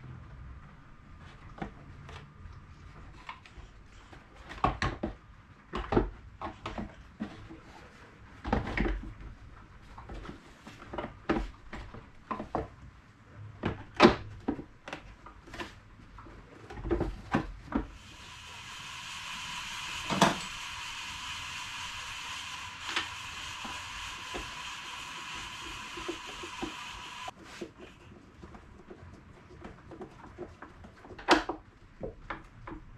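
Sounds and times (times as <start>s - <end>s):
whirring hiss with high tone: 17.9s - 27.3s.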